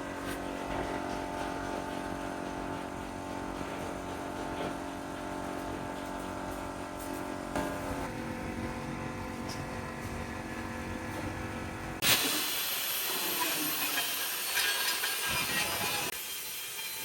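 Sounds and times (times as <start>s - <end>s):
machine humming: 0.0s - 14.6s
power tool grinding metal: 12.0s - 17.0s.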